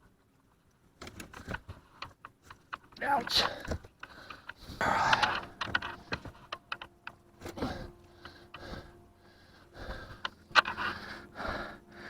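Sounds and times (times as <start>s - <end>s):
light clicks and taps: 0.0s - 9.1s.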